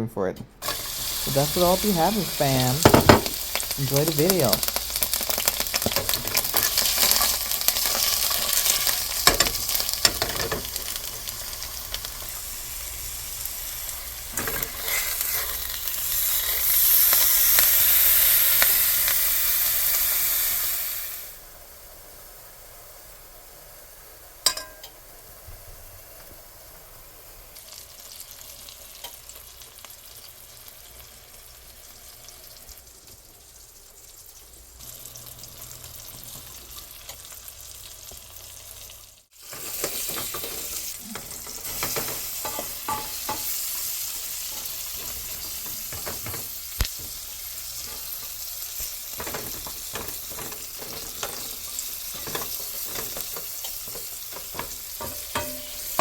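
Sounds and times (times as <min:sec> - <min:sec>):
food sizzling in a frying pan: 0:00.6 - 0:56.0
utensil clicking on a pan: 0:02.9 - 0:11.0, 0:39.5 - 0:56.0
utensil scraping a pan: 0:05.7 - 0:11.0, 0:14.3 - 0:17.2, 0:39.4 - 0:56.0.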